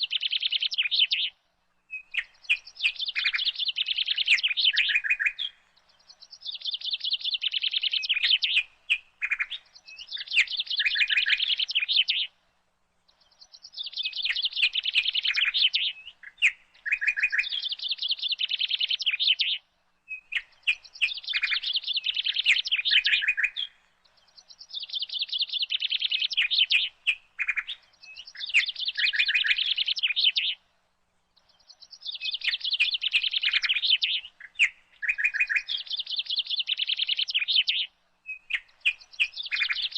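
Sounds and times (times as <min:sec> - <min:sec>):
birds chattering: 0:02.0 - 0:12.3, 0:13.1 - 0:19.5, 0:20.2 - 0:30.6, 0:31.4 - 0:39.9.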